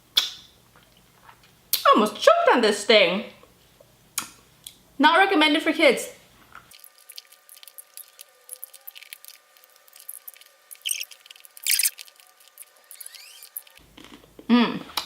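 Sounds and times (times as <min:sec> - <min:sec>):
wet clicking and sucking mouth sounds: 0:00.2 - 0:01.9, 0:10.0 - 0:13.4.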